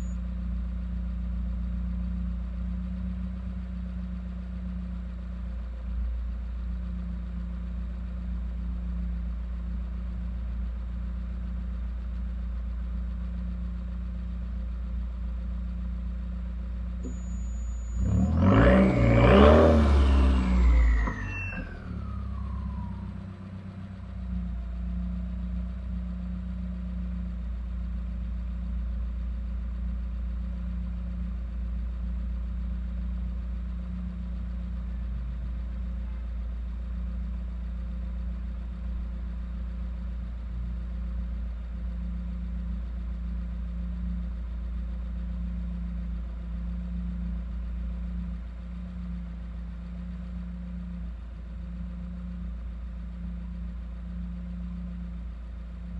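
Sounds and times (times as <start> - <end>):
car engine droning: 0.0 - 55.9
turbo whistle: 17.0 - 18.2.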